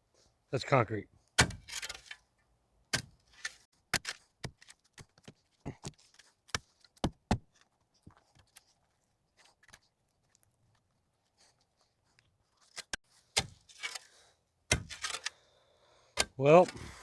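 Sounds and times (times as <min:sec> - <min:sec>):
shovel striking concrete: 0:14.7 - 0:15.3.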